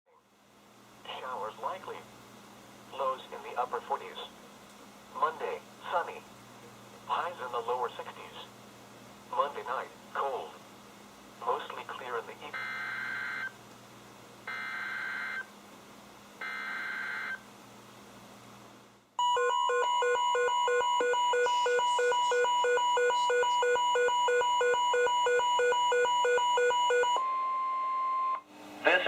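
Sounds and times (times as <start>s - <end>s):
rapid alert alarm beeping: 12.6s - 13.5s, 19.2s - 28.4s.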